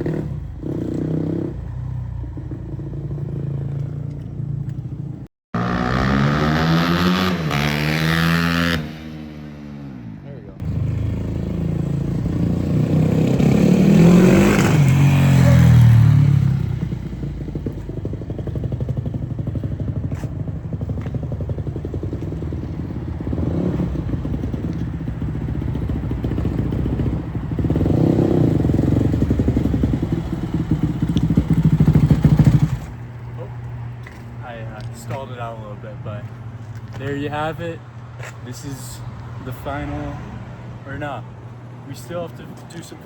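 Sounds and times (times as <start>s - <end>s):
motorcycle engine revving: 0.0s - 33.5s.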